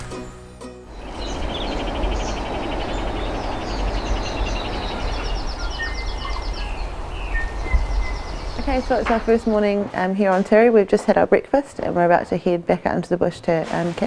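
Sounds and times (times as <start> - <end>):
music: 0.0 - 3.4
steady rushing background: 0.9 - 9.6
birds calling: 0.9 - 9.8
birds chirping: 0.9 - 9.8.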